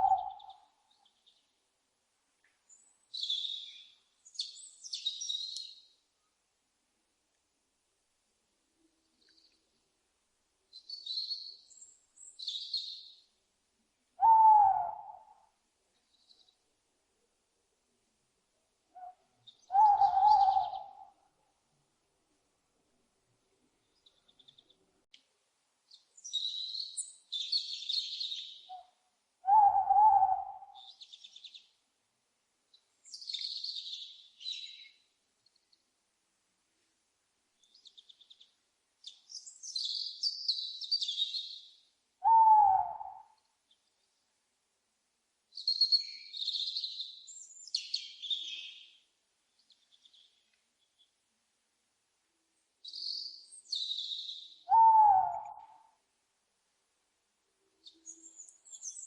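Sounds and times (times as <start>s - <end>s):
owl hooting: 0.0s - 0.7s, 14.2s - 15.5s, 18.9s - 21.2s, 28.7s - 31.0s, 42.2s - 43.4s, 53.8s - 56.0s.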